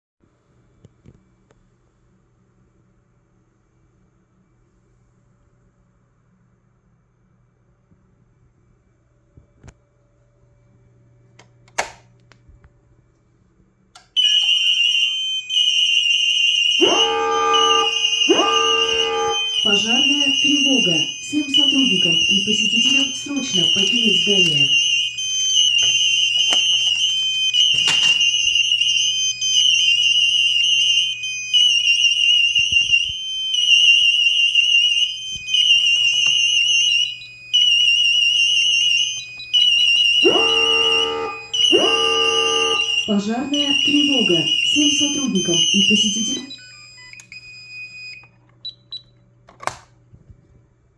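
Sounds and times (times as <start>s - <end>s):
alarm call point click: 14.0s - 47.4s
high-pitched fire alarm tone: 14.0s - 49.1s.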